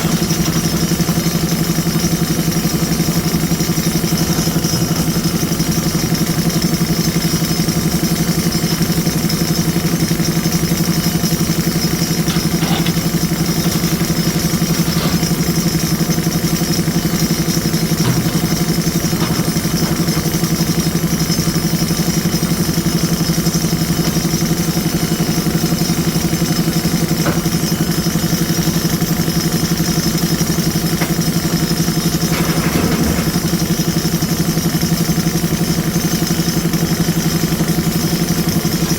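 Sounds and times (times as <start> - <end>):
machine clanking: 0.0 - 7.3, 10.8 - 28.5, 30.4 - 34.6
diesel engine running: 0.0 - 29.2.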